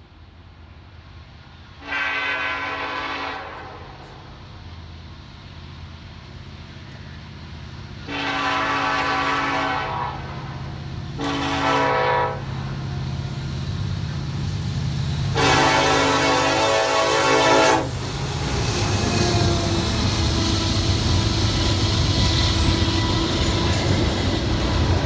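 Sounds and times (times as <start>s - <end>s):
locomotive air horn: 1.8s - 4.1s, 8.0s - 10.5s, 11.2s - 12.5s, 15.3s - 18.1s, 19.0s - 24.4s
diesel engine rumble: 17.9s - 25.0s.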